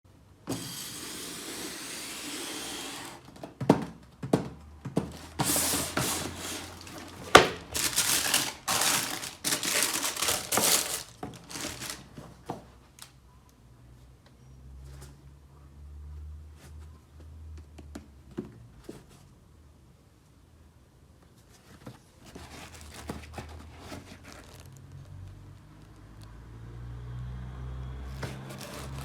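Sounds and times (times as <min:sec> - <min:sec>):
packaging wrap crinkling: 0:05.1 - 0:12.2, 0:22.3 - 0:26.0.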